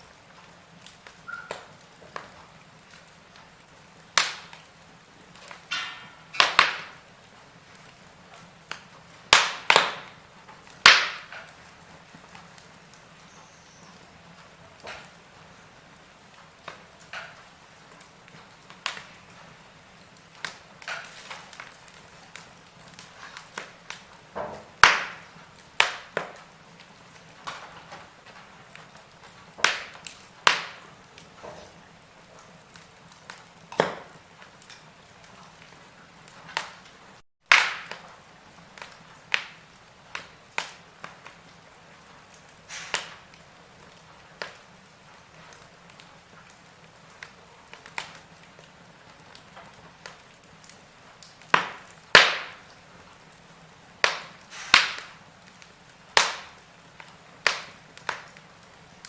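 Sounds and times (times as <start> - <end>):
wood fire crackling and popping: 0.0 - 59.0.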